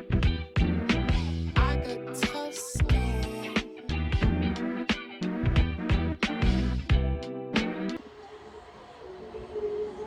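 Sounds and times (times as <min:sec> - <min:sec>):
funk music with steady beat and bass: 0:00.0 - 0:08.0.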